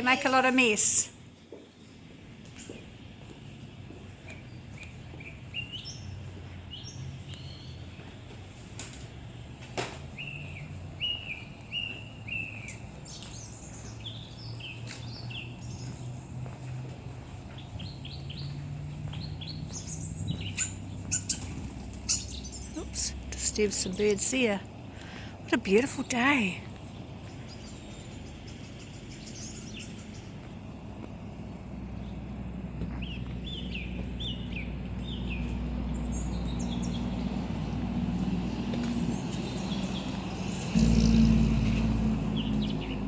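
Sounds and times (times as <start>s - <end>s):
small birds chirping: 0.0s - 9.4s, 10.0s - 43.0s
bird wings flapping: 21.1s - 22.2s.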